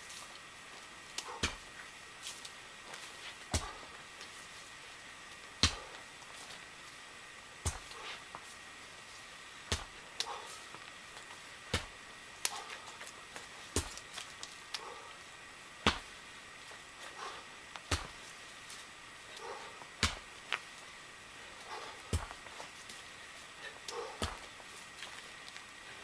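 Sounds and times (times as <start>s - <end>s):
sledgehammer strikes: 5.6s - 6.0s, 7.6s - 8.0s, 9.7s - 10.0s, 15.8s - 16.1s, 17.9s - 18.2s, 20.0s - 20.3s, 21.8s - 22.4s.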